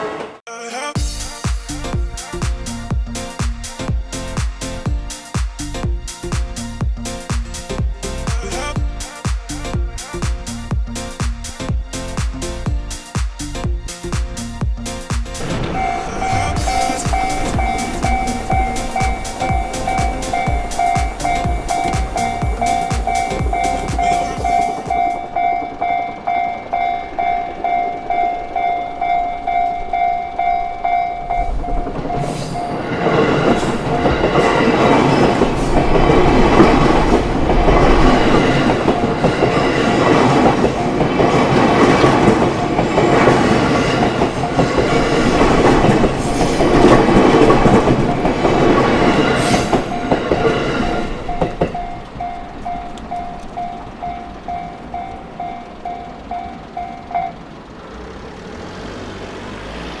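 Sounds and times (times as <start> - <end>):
train wheels clacking on rails: 11.1 - 58.4
level crossing bell dinging: 15.5 - 31.5, 51.3 - 57.5.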